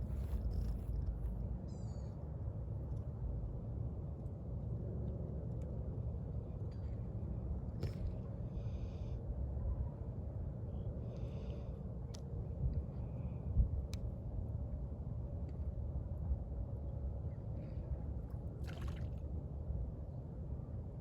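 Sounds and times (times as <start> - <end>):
low outdoor rumble: 0.0 - 21.0.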